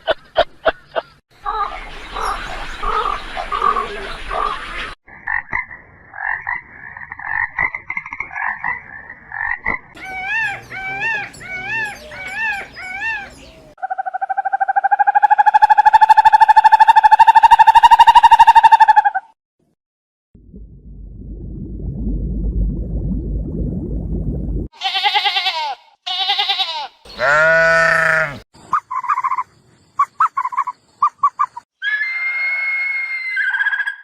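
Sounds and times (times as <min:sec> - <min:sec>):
frogs calling: 0:05.2 - 0:19.0, 0:27.1 - 0:32.0
frog pulsed trill: 0:13.8 - 0:19.1.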